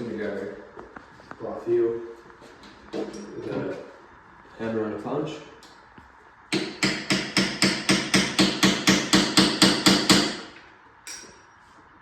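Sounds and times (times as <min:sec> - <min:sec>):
hammer striking metal punch: 0:06.5 - 0:10.5.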